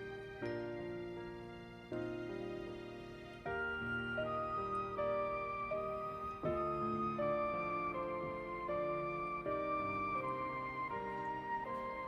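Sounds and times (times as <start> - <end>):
slow gentle background music: 0.0 - 12.0.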